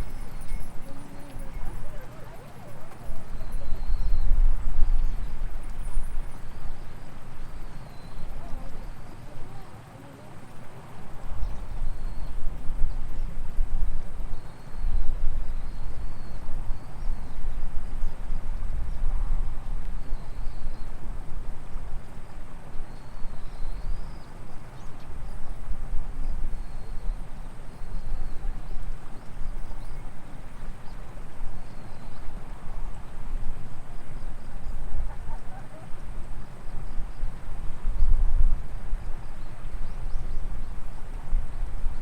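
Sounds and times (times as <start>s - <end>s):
faint high chirps: 0.0s - 13.4s
thin steady high tone: 0.0s - 37.3s
wind rumble on microphone: 0.0s - 42.0s.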